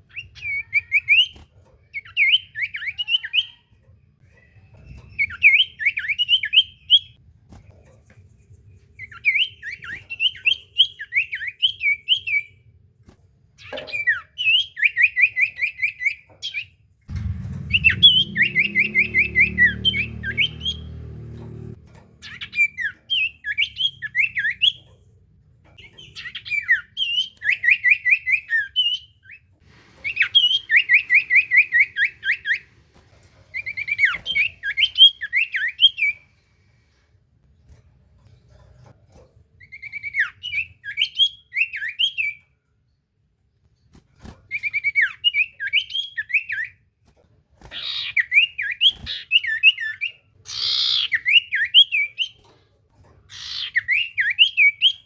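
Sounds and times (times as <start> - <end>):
bird whistling and trilling: 0.1 - 3.7, 5.0 - 7.2, 9.0 - 12.6, 13.6 - 20.9, 22.2 - 24.8, 25.8 - 32.7, 33.5 - 36.2, 39.6 - 42.4, 44.5 - 46.8, 47.7 - 52.4, 53.3 - 55.0
low rumble: 17.1 - 22.0.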